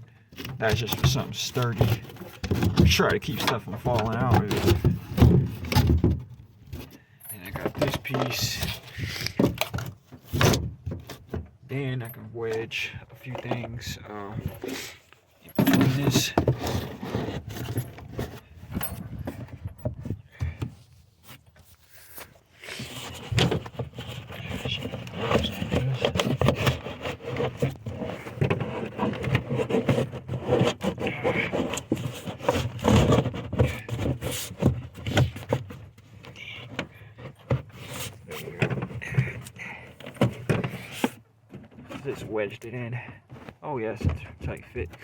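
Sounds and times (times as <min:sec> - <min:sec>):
wood knocking and scraping on metal: 0:00.2 - 0:14.8, 0:15.4 - 0:21.7, 0:22.7 - 0:45.0
wood pieces knocking and rattling: 0:00.3 - 0:11.6, 0:15.5 - 0:20.7.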